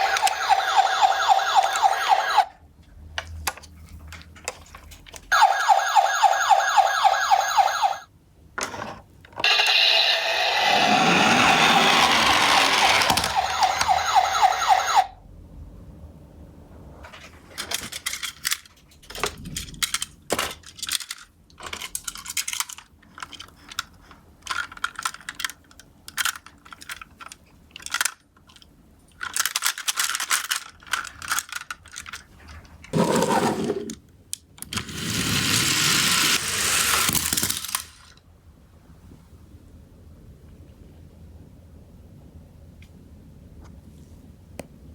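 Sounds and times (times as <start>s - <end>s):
toy wheels rolling: 0.0s - 2.4s, 9.4s - 15.0s, 32.9s - 34.0s, 34.6s - 38.1s
toy cars clinking and rattling: 9.4s - 15.0s, 17.5s - 34.0s, 34.6s - 38.2s.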